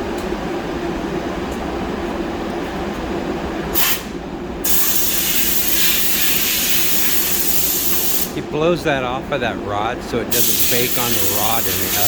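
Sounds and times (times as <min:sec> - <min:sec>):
mechanical drone with low hum: 0:00.0 - 0:12.0
compressed air blow gun hissing: 0:04.7 - 0:08.4, 0:10.3 - 0:12.0.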